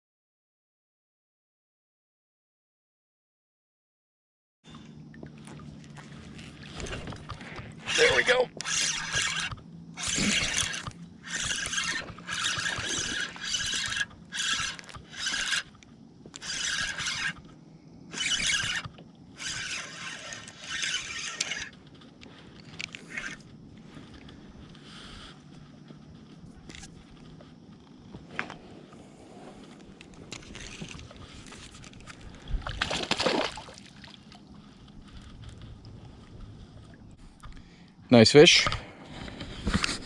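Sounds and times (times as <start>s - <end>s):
fishing reel cranking: 6.3s - 17.5s, 18.1s - 25.6s, 26.2s - 27.4s, 29.6s - 32.5s.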